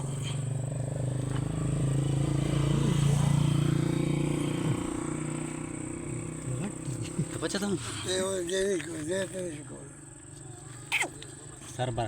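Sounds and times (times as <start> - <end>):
vehicle engine running: 0.0 - 7.8.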